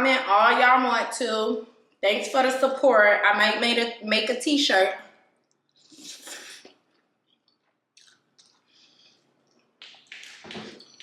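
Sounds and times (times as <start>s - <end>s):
person chewing wetly: 5.4s - 11.0s.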